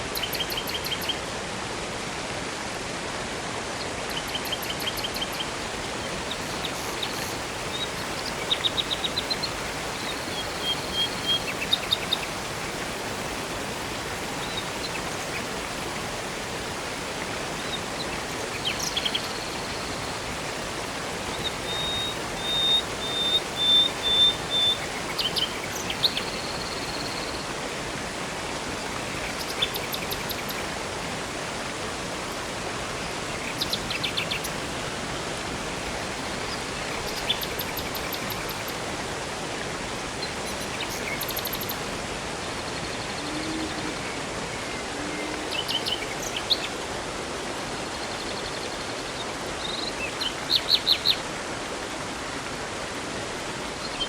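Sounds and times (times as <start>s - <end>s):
river and waterfall rushing: 0.0s - 54.0s
songbirds chirping: 4.1s - 46.9s.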